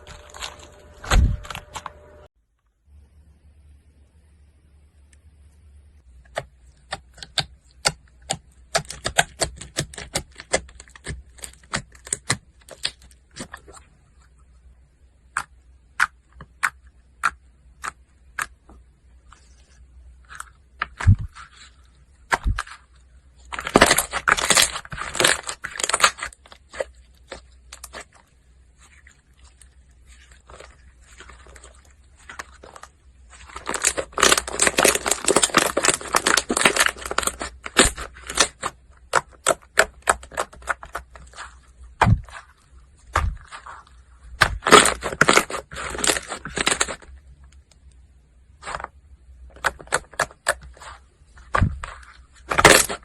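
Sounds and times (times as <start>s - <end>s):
slime crackling: 20.2s - 47.1s, 49.5s - 53.0s
dull thumps: 41.9s - 42.5s.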